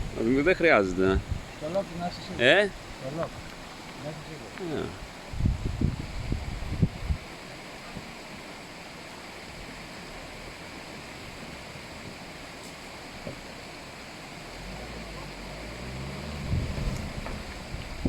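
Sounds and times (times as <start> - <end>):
flowing river water: 0.0 - 18.0.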